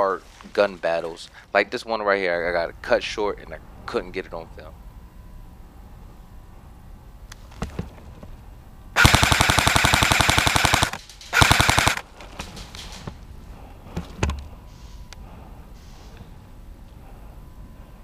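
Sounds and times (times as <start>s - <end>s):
airsoft rifle firing bursts: 9.0s - 12.0s.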